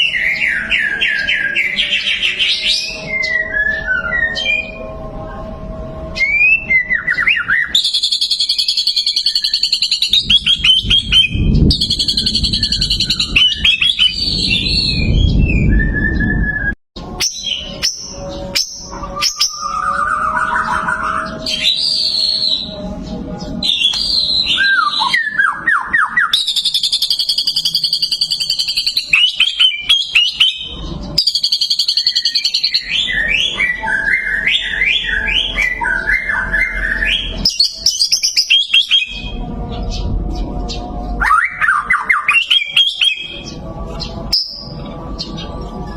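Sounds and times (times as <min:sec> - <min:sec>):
bird singing: 0:00.0 - 0:45.9
low rumble: 0:10.0 - 0:16.8, 0:39.1 - 0:41.3.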